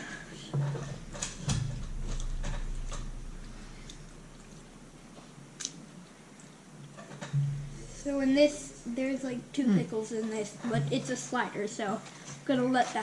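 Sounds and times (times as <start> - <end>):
low rumble: 0.6 - 5.1, 7.4 - 9.6.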